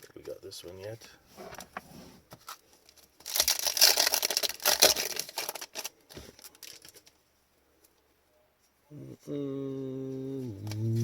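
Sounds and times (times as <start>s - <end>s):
foil wrapper tearing and crinkling: 2.9s - 7.1s.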